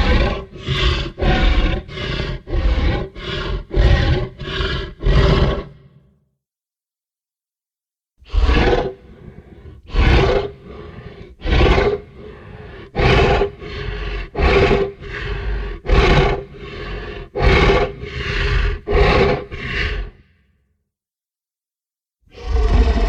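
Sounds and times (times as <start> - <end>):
dinosaur bellowing calls: 0.0 - 6.1, 22.3 - 23.0.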